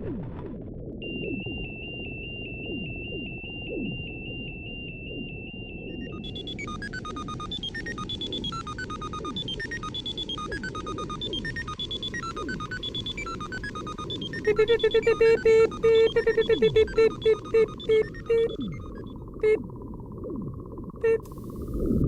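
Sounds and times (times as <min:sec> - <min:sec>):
computer-like bleeps: 0:01.0 - 0:22.0
rapid high-pitched beeping: 0:05.6 - 0:21.9.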